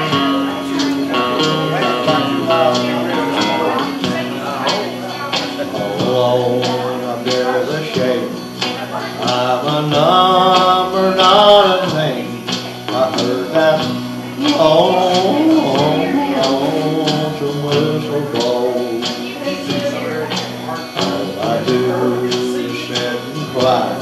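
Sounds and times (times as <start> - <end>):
man singing country song: 0.0 - 24.0
strummed accompaniment: 0.0 - 24.0.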